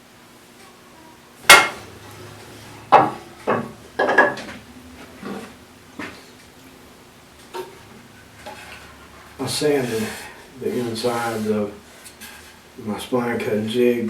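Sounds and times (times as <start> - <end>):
wood knocking on hard surface: 2.9 - 4.6.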